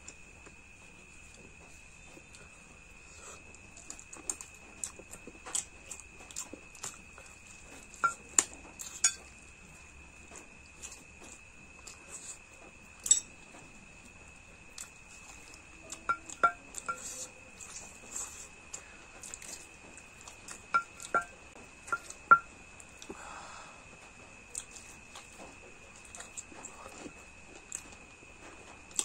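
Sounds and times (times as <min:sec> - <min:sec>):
faint high-pitched whine: 0:00.0 - 0:29.0
utensils clinking on dishes: 0:08.9 - 0:09.3, 0:16.0 - 0:17.3, 0:20.7 - 0:21.3, 0:21.9 - 0:22.5.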